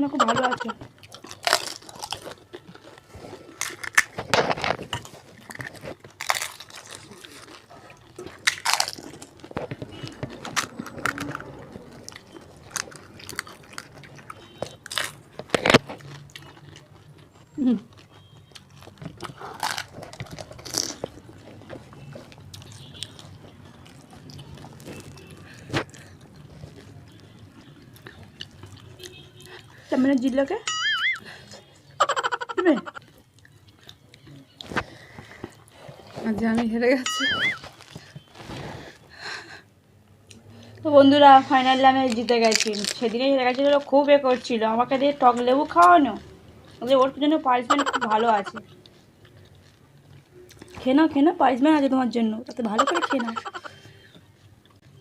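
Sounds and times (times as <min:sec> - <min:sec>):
quiet chewing: 0:00.4 - 0:30.5, 0:31.2 - 0:39.6, 0:41.4 - 0:50.8
crunchy shells being bitten: 0:01.1 - 0:02.9, 0:03.5 - 0:17.2, 0:18.5 - 0:21.3, 0:42.0 - 0:43.8.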